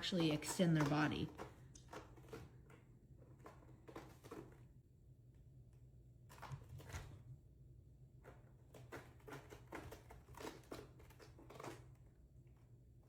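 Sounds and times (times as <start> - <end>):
cat claws scratching post: 0.0 - 5.0, 5.7 - 7.4, 8.0 - 13.0
low room hum: 0.0 - 13.0.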